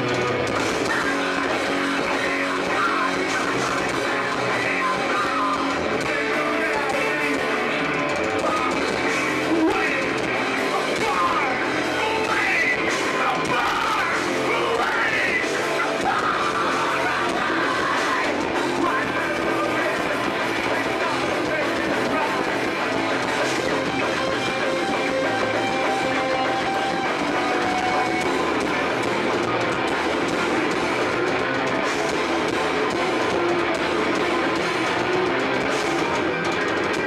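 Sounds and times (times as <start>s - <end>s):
hardcore rock band playing: 0.0s - 37.0s
shouted vocals: 8.4s - 23.6s.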